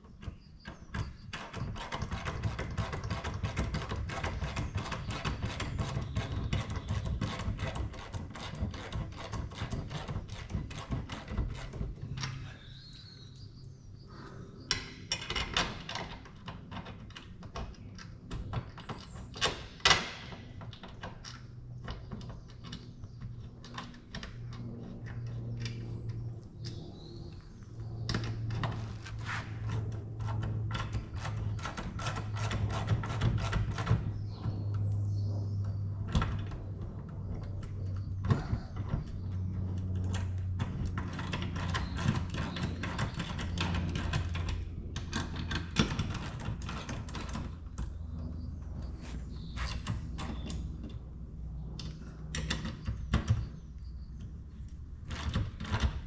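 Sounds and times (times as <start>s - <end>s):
low hum shifting in pitch: 24.0s - 31.6s, 34.0s - 45.4s.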